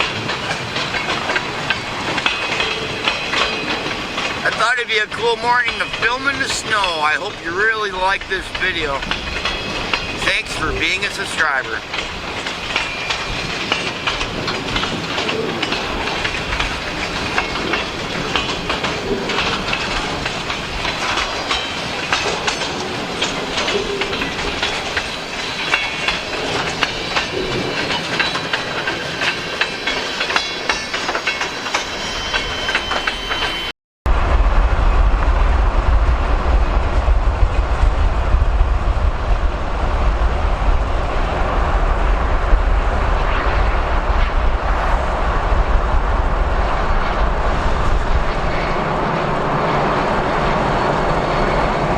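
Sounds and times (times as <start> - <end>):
train wheels clicking over rail joints: 0.0 - 33.7
steady low rumble: 34.1 - 51.9.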